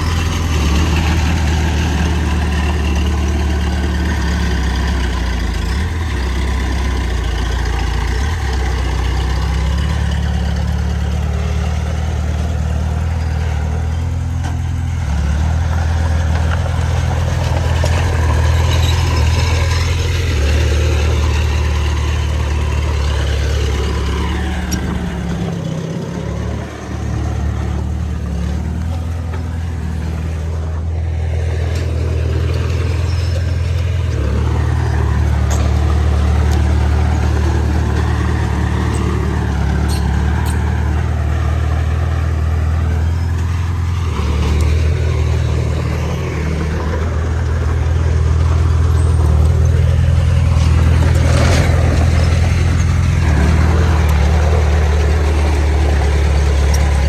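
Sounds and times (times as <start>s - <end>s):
heavy diesel engine droning: 0.0s - 57.0s.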